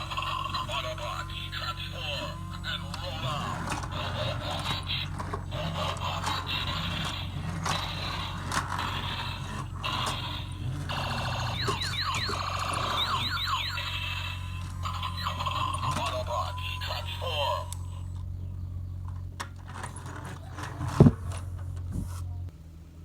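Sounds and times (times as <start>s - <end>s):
toy clicking and rattling: 0.0s - 17.8s
steady low hum: 0.0s - 22.5s
electronic siren chirps: 6.6s - 18.1s.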